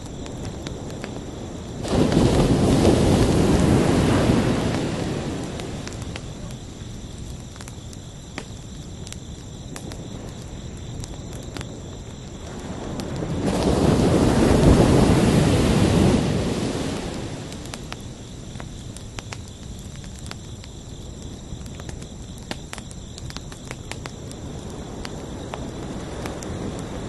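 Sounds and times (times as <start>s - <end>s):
crickets chirping: 0.0s - 27.0s
ocean waves and surf: 1.8s - 6.1s, 12.6s - 17.8s.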